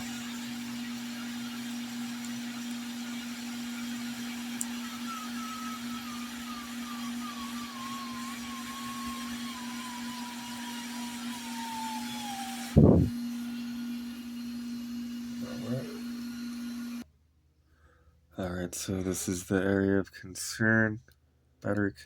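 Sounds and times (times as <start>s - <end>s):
wavering whistle sliding down: 0.0s - 17.0s.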